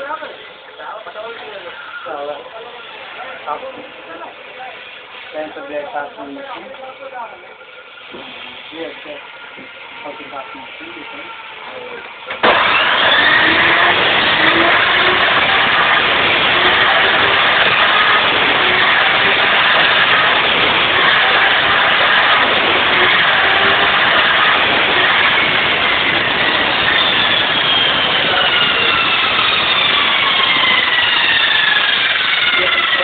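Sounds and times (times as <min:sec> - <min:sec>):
faint falling whines: 0:00.0 - 0:33.0
sharpening machine drone: 0:07.0 - 0:33.0.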